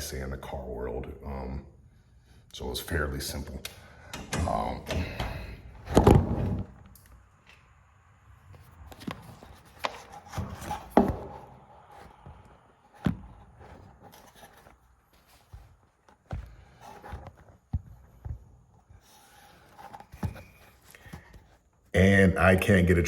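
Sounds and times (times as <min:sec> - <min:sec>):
tools knocking and clunking: 0:04.0 - 0:07.1, 0:08.9 - 0:21.6.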